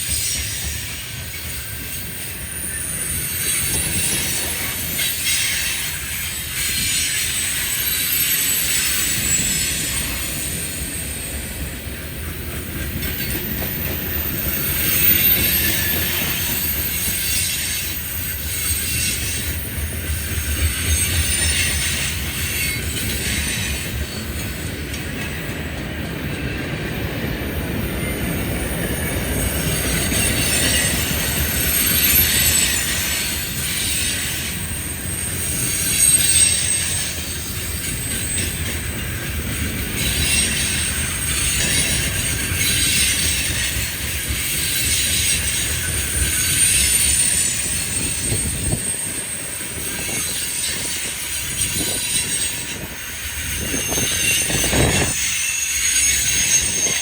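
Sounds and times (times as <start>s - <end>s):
wheel-on-rail hiss: 0.0s - 25.6s
train cars rumbling: 0.0s - 57.0s.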